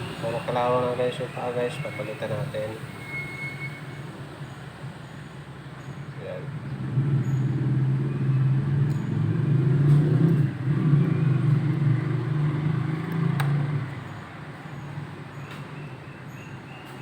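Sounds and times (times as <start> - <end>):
vehicle engine running: 6.5 - 15.3.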